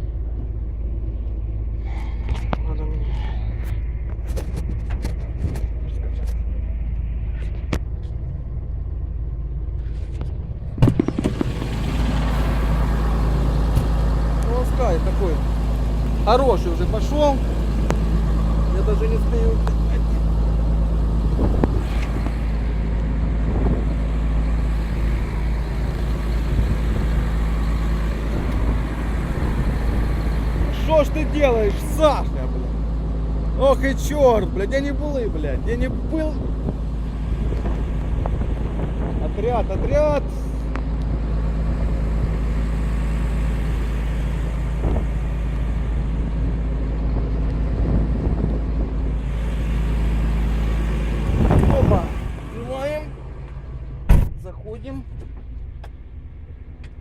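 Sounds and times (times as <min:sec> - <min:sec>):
heavy vehicle engine droning: 0:00.0 - 0:57.0.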